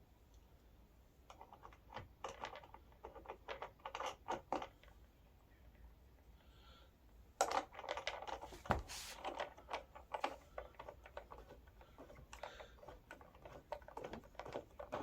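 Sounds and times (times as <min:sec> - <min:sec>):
plastic and metal parts clicking: 0:09.2 - 0:15.0.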